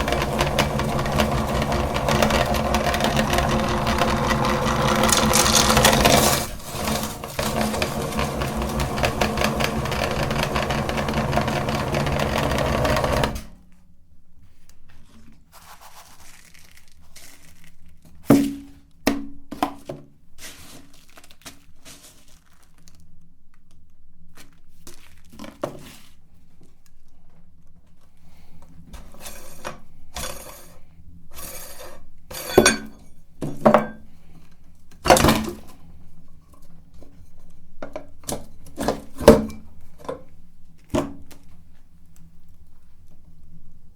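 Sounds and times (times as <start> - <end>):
clicks and clatter: 0.0 - 13.5
meat grinder crunching hard candy: 0.0 - 13.5.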